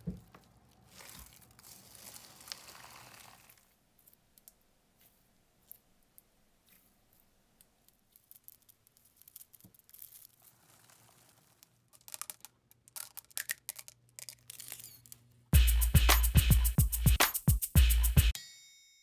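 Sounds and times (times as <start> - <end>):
slime squished by hand: 0.3 - 3.8
music with a beat: 15.6 - 18.4.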